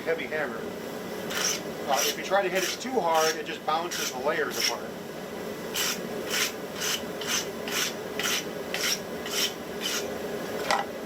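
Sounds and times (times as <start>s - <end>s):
wire brush scrubbing metal: 1.3s - 4.8s, 5.7s - 10.1s.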